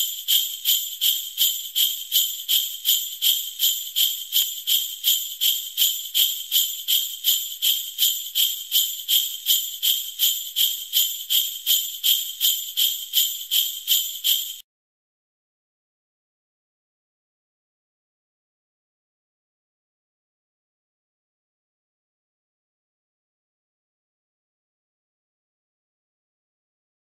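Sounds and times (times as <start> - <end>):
sleigh bells jingling: 0.0 - 14.6.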